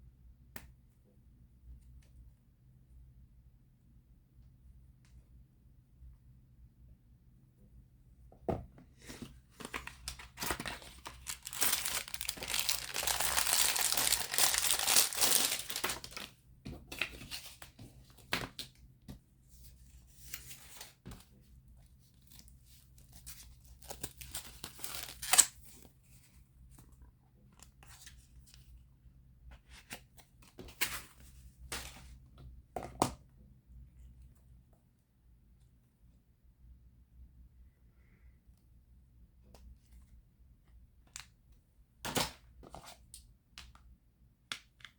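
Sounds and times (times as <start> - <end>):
packaging tearing and crinkling: 10.1 - 16.3, 23.8 - 25.6.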